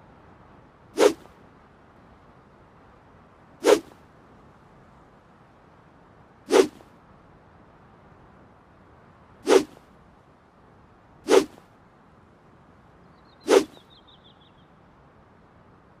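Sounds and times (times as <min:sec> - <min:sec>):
sword swishing through air: 0:01.0 - 0:01.3, 0:03.6 - 0:04.0, 0:06.5 - 0:06.9, 0:09.4 - 0:09.8, 0:11.3 - 0:11.6, 0:13.5 - 0:13.8.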